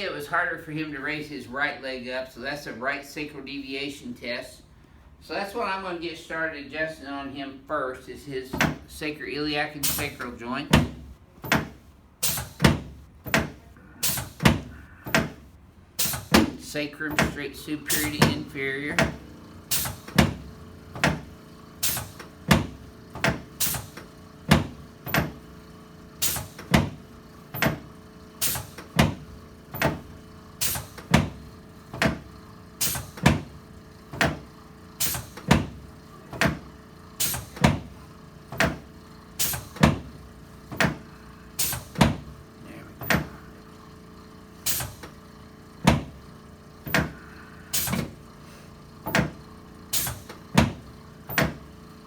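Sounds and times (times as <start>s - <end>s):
chiropractic adjustment clacks: 9.8s - 25.5s, 26.2s - 42.4s, 43.0s - 43.4s, 46.8s - 48.2s, 49.0s - 51.7s.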